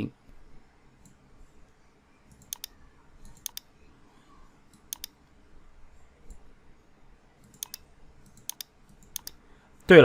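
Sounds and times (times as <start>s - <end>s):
computer mouse button clicks: 2.3s - 3.7s, 4.8s - 5.2s, 7.4s - 9.4s.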